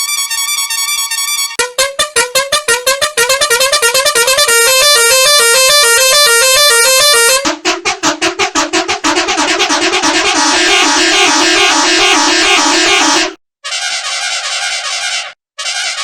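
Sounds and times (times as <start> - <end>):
bus horn honk melody: 0.1 - 7.5, 9.4 - 13.4.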